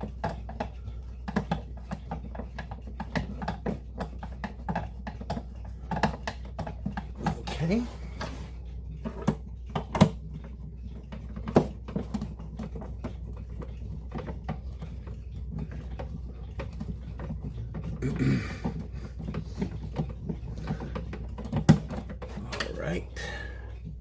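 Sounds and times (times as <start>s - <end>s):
clicks and taps of clock parts: 0.0s - 24.0s.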